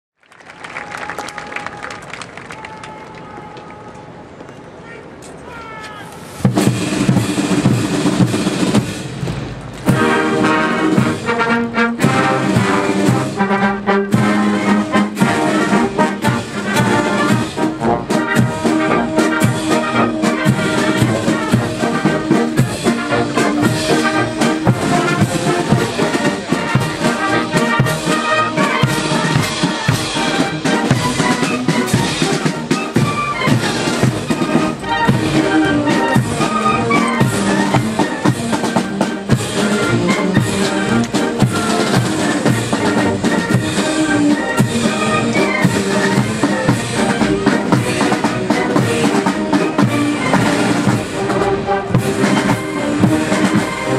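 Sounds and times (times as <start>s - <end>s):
brass band playing a march: 6.2s - 53.9s
steady drumbeat: 6.4s - 53.9s.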